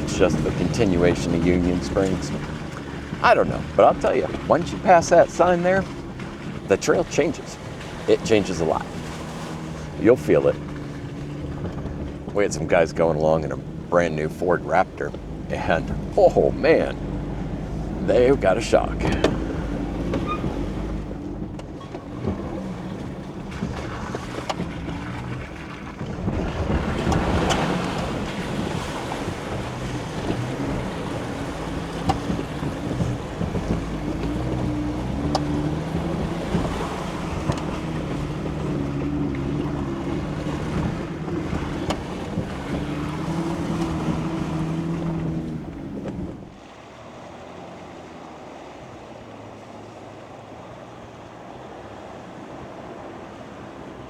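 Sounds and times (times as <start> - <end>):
off-road engine at low speed: 0.0 - 54.0
wind on microphone: 16.9 - 46.5.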